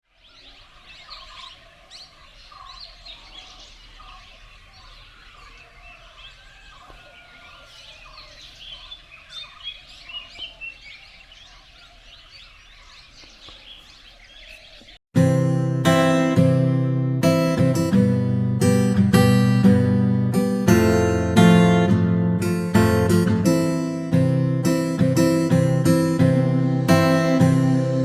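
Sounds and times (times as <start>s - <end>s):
wild birds chirping and calling: 0.1s - 15.0s.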